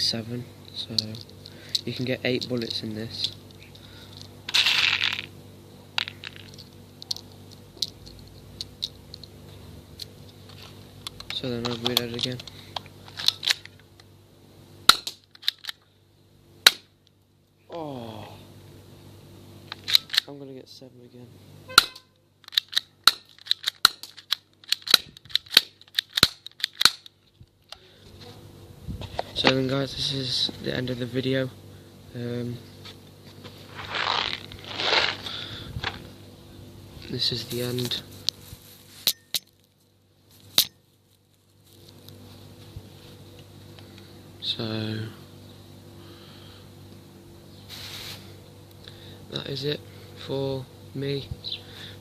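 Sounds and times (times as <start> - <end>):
gun mechanism clicking: 14.9 - 15.8, 21.8 - 27.2
bb gun shots snapping: 16.6 - 16.9.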